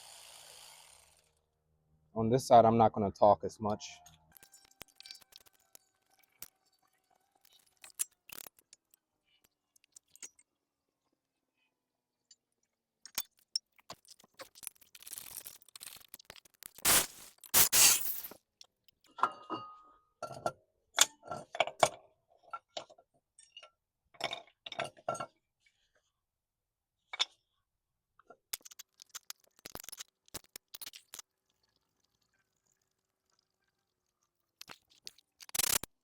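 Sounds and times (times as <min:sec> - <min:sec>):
loud rasping bursts: 0:16.8 - 0:18.3.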